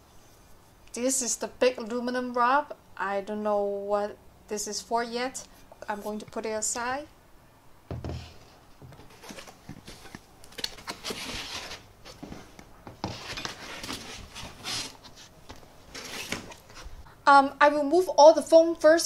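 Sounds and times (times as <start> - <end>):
packing material rustling: 9.0 - 17.0.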